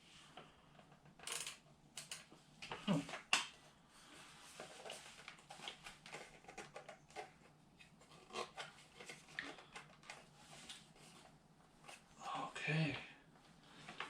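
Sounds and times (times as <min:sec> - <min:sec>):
packaging rustling: 0:04.5 - 0:12.1.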